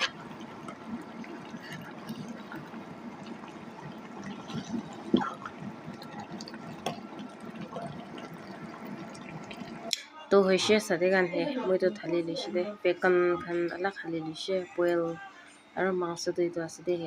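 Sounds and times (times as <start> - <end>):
curry bubbling in a pot: 0.0 - 9.9.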